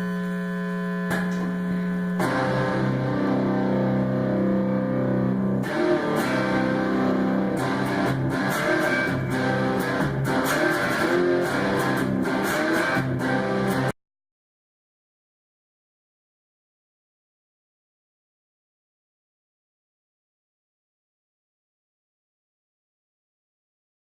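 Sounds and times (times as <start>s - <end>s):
guitar chords strummed: 0.0s - 14.0s.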